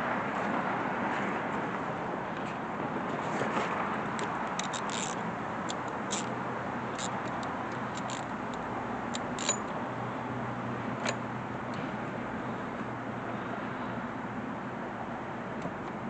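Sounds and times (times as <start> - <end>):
ratchet clicking: 4.6 - 6.3, 6.9 - 9.7
hand tools clicking on metal: 9.1 - 9.7.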